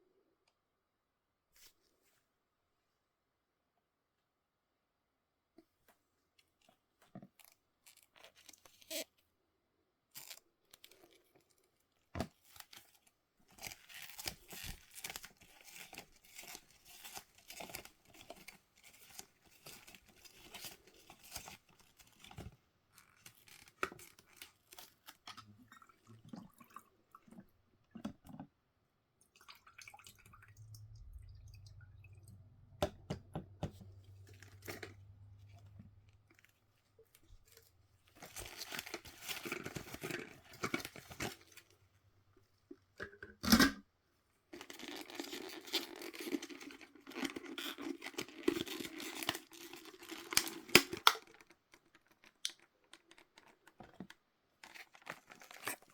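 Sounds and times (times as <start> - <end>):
packaging tearing and crinkling: 13.6 - 22.4, 37.4 - 41.7, 44.6 - 53.5, 54.6 - 55.9
steady low hum: 30.3 - 36.4.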